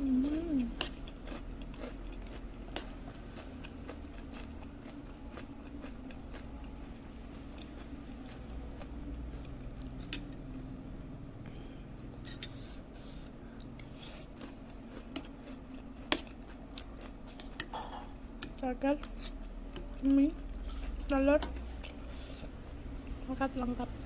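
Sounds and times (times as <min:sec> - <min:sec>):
person chewing: 0:00.0 - 0:10.2, 0:11.5 - 0:17.7
steady low hum: 0:00.0 - 0:24.0.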